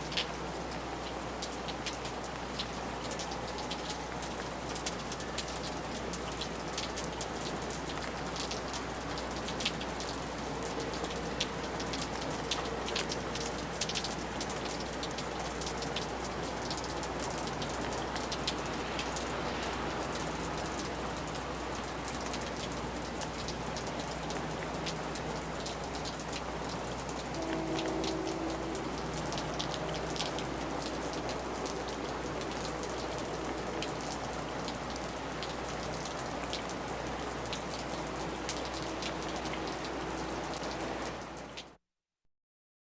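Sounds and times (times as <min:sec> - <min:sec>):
drips and splashes from gutter: 0:00.0 - 0:41.8
steady rain on porch: 0:00.0 - 0:41.8
faint passing vehicle hum: 0:00.8 - 0:41.5.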